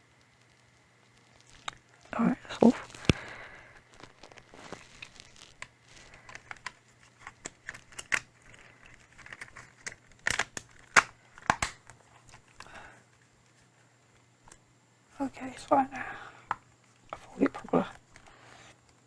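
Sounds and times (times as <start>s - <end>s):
crinkling rustles: 0.0s - 14.6s
sharp plastic clicks: 5.6s - 12.7s.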